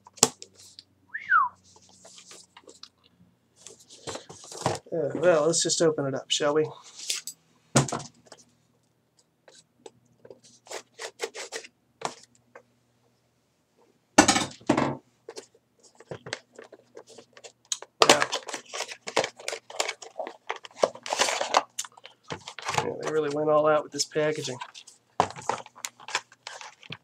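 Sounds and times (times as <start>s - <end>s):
packaging being opened by hand: 15.3s - 23.4s, 24.0s - 27.0s.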